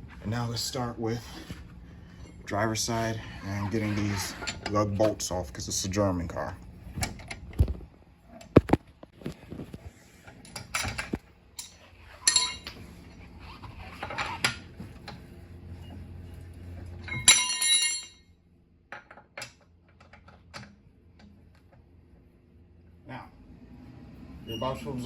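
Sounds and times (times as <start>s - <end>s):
metal tools and bolts clinking: 4.0s - 5.2s, 10.5s - 13.2s, 16.9s - 18.3s
ringing metal clank: 12.2s - 12.8s, 17.0s - 18.3s.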